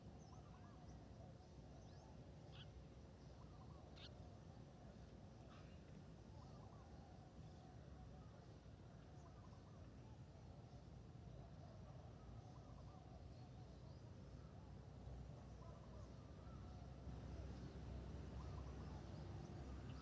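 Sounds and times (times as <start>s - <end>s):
distant bird calls: 1.9s - 4.2s, 15.4s - 20.0s.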